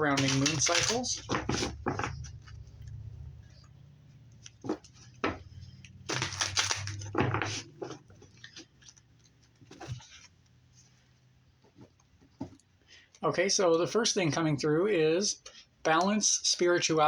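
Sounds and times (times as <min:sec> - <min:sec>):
cards rustling shuffle: 0:00.0 - 0:03.7, 0:04.3 - 0:10.4
cards tapping: 0:00.1 - 0:02.9, 0:04.4 - 0:08.7.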